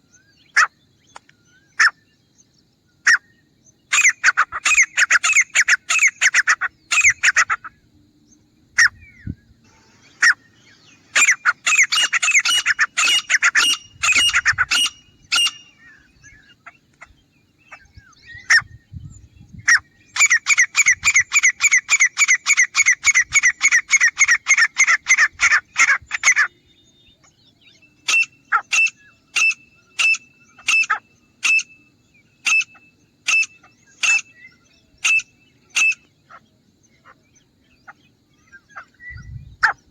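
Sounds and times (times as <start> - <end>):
bird calling harsh repeated notes: 9.7 - 16.2, 19.7 - 26.6, 27.9 - 36.4.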